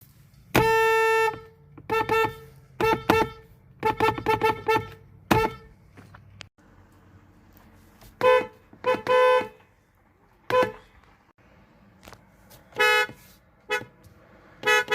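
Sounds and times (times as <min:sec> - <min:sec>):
car horn honking: 0:00.5 - 0:05.8, 0:08.2 - 0:09.7, 0:10.5 - 0:10.9, 0:12.7 - 0:14.9.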